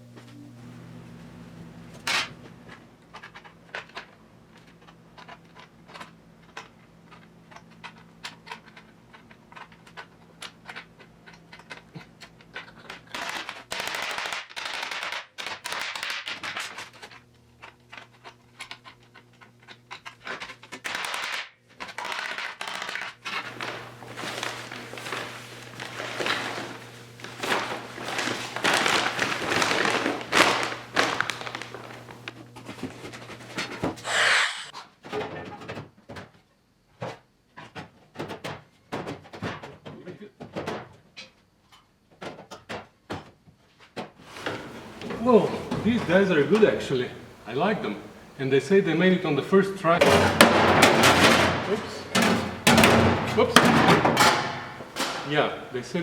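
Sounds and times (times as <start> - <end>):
welder crackling: 20.8 - 32.6
steady low hum: 44.4 - 56.0.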